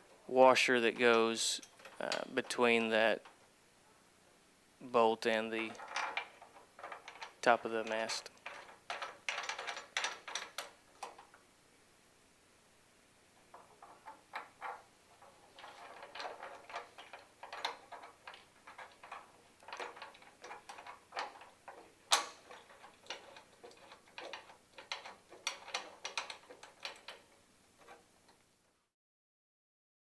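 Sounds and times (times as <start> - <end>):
small metal clicks and clinks: 15.5 - 28.4.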